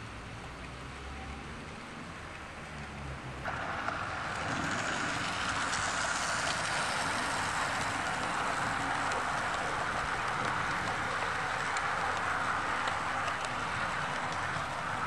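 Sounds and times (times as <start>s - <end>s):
model train rattling on rails: 3.5s - 15.0s.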